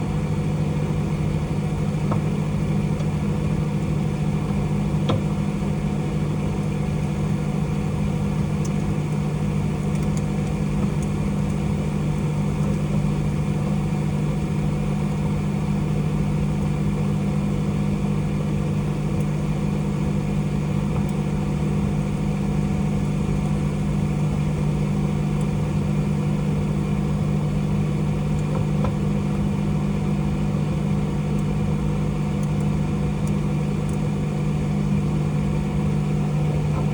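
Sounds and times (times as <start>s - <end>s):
microwave oven humming: 0.0s - 36.9s.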